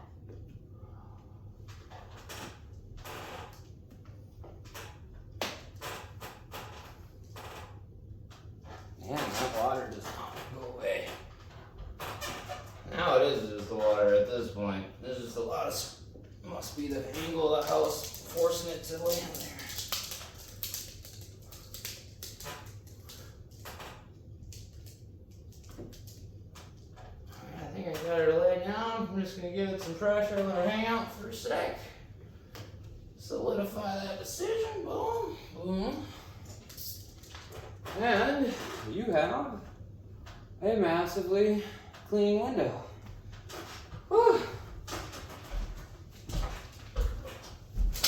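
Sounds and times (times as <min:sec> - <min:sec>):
low steady hum: 0:00.0 - 0:48.0.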